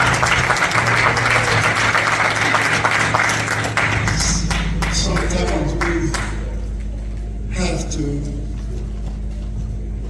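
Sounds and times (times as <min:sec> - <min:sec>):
low held note: 0:00.0 - 0:07.6
crowd applauding: 0:00.0 - 0:07.9.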